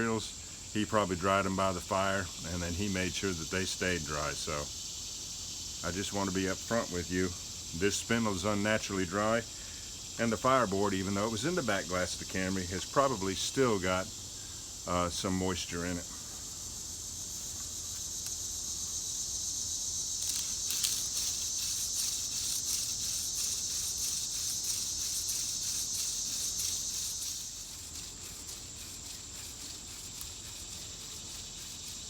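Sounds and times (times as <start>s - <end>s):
crickets chirping: 0.0s - 32.0s
spindle rubbing on fireboard: 17.3s - 32.0s.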